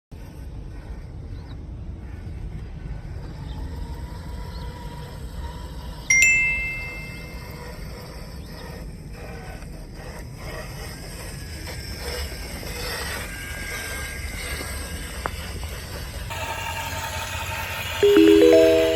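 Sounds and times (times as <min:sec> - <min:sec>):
bright metallic ding: 0:06.1 - 0:07.4, 0:18.0 - 0:18.9.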